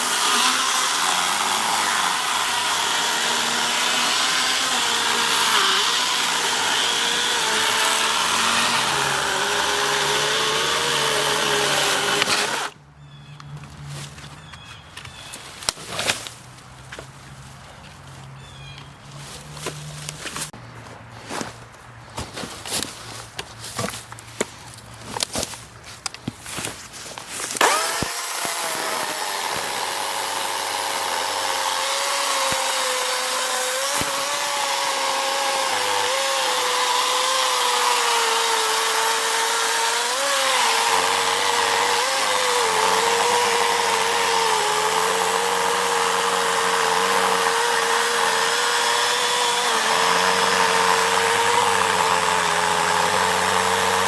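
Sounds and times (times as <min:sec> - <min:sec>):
electric chainsaw whining: 0:00.0 - 0:12.8, 0:27.6 - 0:54.0.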